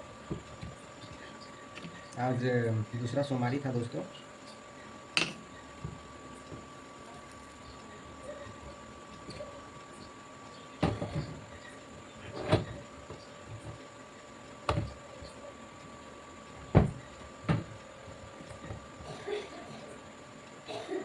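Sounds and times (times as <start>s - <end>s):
hard objects knocking on workbench: 14.7s - 15.0s, 16.7s - 17.8s.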